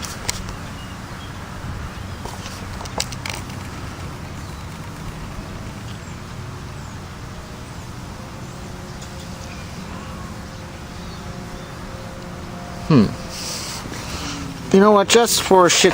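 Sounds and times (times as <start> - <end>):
box fan humming: 0.0 - 15.9.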